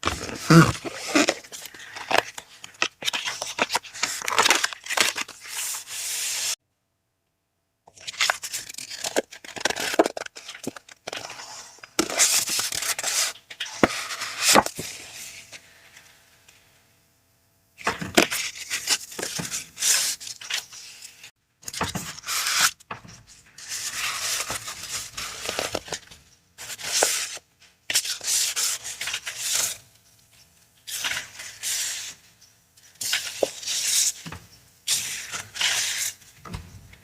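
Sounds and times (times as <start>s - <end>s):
paper rustling and crinkling: 0.0s - 6.6s, 8.0s - 15.4s, 21.7s - 29.8s.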